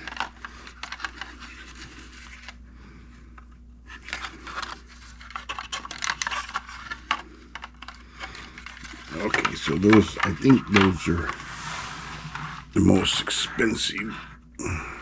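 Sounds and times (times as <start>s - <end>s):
faint steady hum: 0.0s - 15.0s
plastic scraping on hard surface: 3.9s - 13.8s.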